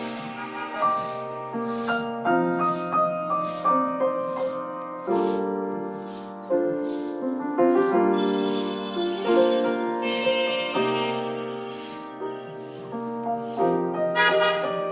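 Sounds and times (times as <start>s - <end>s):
soft shaker beat: 0.0s - 7.2s
gentle keyboard melody: 0.0s - 14.9s.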